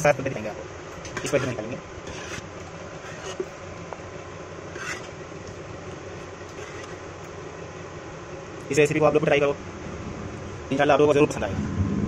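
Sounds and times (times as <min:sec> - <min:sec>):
steady background hum: 0:00.0 - 0:12.0
spoon scraping a pan: 0:01.1 - 0:03.5, 0:04.8 - 0:05.1, 0:06.5 - 0:07.0.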